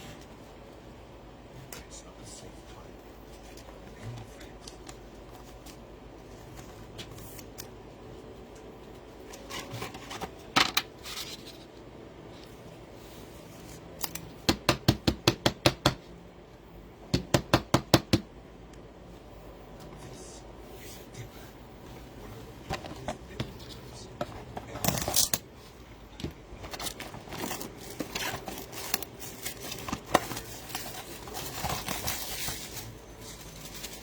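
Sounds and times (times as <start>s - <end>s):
pack wrapping crackle: 26.7s - 34.0s.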